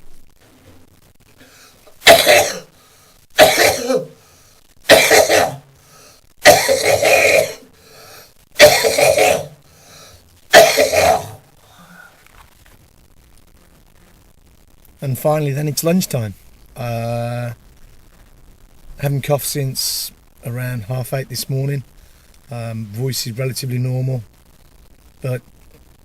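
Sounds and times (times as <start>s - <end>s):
man coughing: 2.0s - 2.7s, 3.4s - 4.2s, 4.9s - 5.6s, 6.4s - 7.6s, 8.6s - 9.6s, 10.5s - 11.4s.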